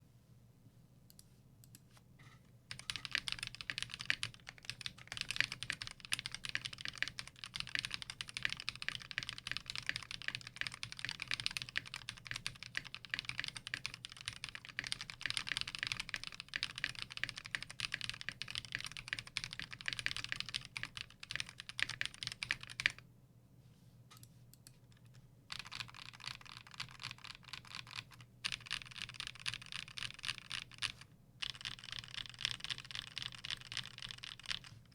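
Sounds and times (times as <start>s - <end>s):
fast typing on mechanical keyboard: 2.7s - 23.0s, 25.0s - 34.9s.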